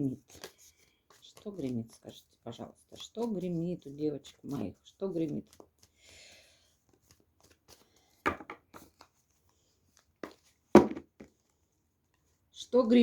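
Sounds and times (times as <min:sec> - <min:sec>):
cards slapping and tapping: 0:00.2 - 0:01.7, 0:05.2 - 0:06.0, 0:06.8 - 0:11.5
cards sliding rustle: 0:00.2 - 0:02.0, 0:05.2 - 0:10.6.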